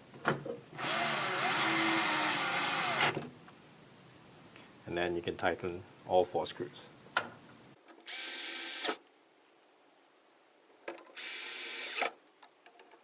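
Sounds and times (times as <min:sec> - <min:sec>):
power screwdriver whirring: 0:08.1 - 0:09.0, 0:11.2 - 0:12.2.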